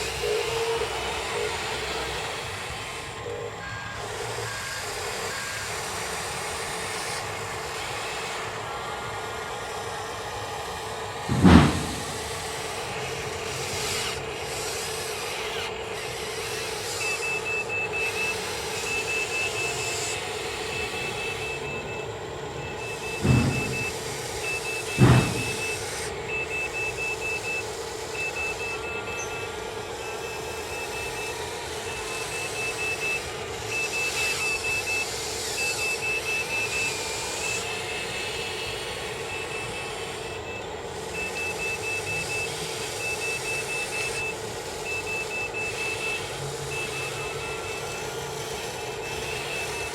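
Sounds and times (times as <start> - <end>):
reversing beeper: 11.3 - 12.3, 17.2 - 31.3, 41.2 - 48.1
loud knocks: 11.3 - 12.6, 22.6 - 26.1
motor hum: 11.3 - 26.2.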